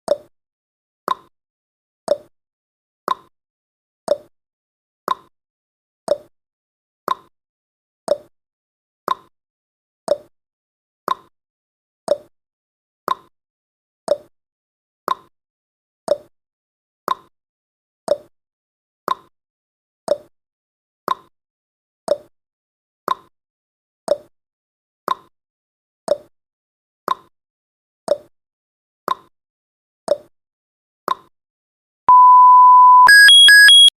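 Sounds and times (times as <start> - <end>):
multi-tone higher beep: 32.1 - 33.9
steady electronic beep: 32.1 - 33.9
timer ticking: 32.1 - 33.9.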